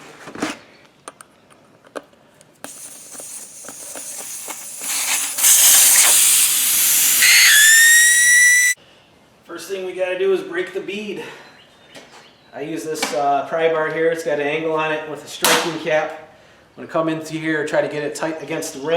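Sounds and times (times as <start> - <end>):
air hissing from tire valve: 2.6 - 8.8
steady whistle: 3.1 - 8.8.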